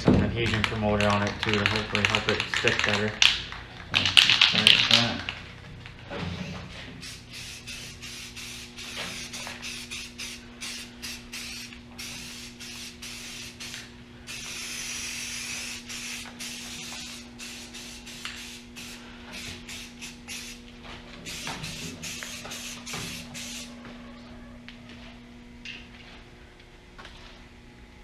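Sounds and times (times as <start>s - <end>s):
steady low hum: 5.3s - 28.0s
aerosol spray can hissing: 7.0s - 20.6s, 21.3s - 23.7s.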